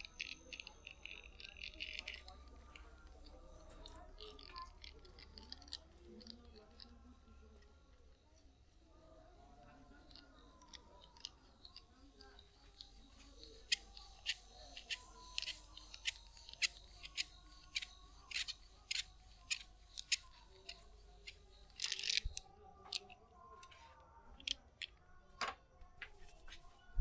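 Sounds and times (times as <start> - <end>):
sharp clicks: 9.5 - 23.2.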